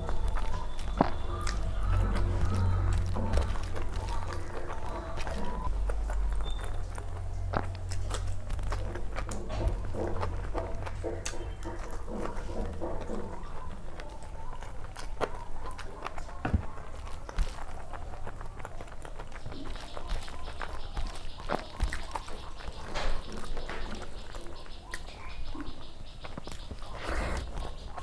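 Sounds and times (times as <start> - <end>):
light crunches: 0.0 - 28.0
person chewing: 0.0 - 28.0
wet mouth clicks: 26.6 - 27.8.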